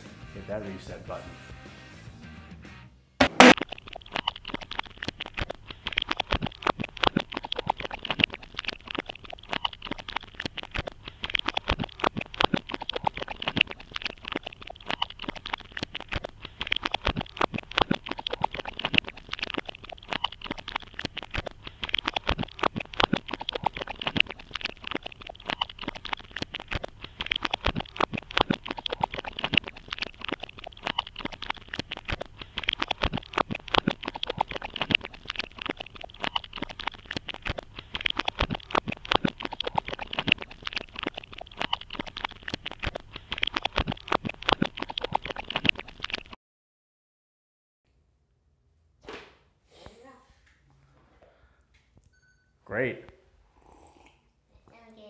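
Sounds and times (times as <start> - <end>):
dense crackling clicks and pops: 3.2 - 46.4.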